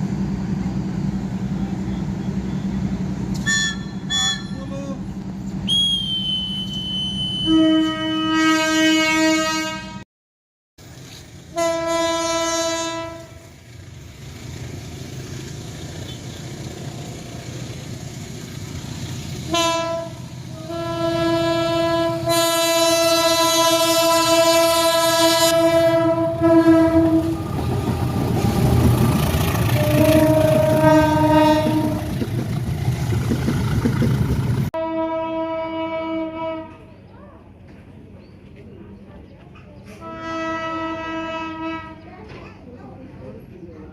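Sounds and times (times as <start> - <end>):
running train rumble: 0.0 - 10.0, 10.8 - 43.9
train horn blasts: 3.4 - 4.7, 6.7 - 10.0, 11.5 - 13.5, 19.5 - 27.4, 29.6 - 32.2, 34.8 - 36.9, 39.9 - 42.1.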